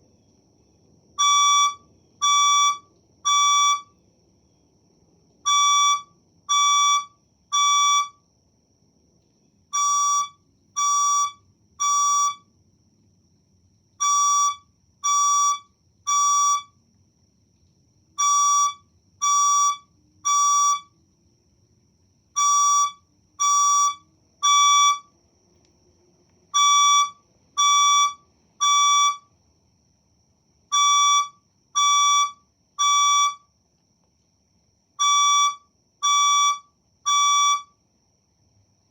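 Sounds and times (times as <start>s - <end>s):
fire alarm evacuation beeps: 1.2s - 4.0s, 5.4s - 8.2s, 9.7s - 12.5s, 14.0s - 16.8s, 18.2s - 20.9s, 22.4s - 25.1s, 26.6s - 29.3s, 30.7s - 33.5s, 35.0s - 37.8s.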